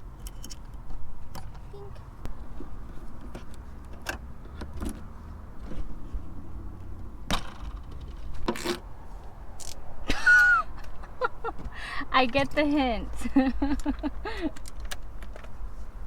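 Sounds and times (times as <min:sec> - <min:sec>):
plastic and metal parts clicking: 0:13.7 - 0:15.6.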